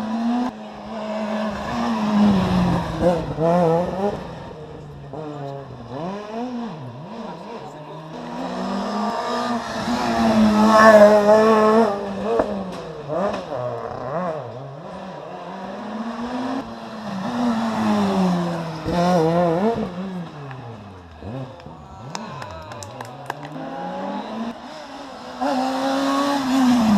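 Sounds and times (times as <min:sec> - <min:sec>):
rally car engines revving past: 0:00.0 - 0:26.9.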